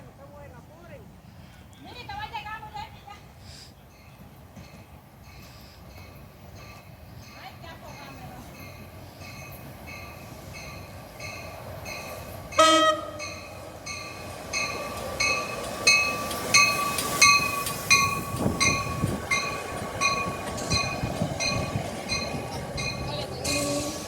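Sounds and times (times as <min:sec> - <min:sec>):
train rumble: 0:00.0 - 0:24.0
railroad crossing bell ringing: 0:03.8 - 0:24.0
train horn blast: 0:12.6 - 0:13.4.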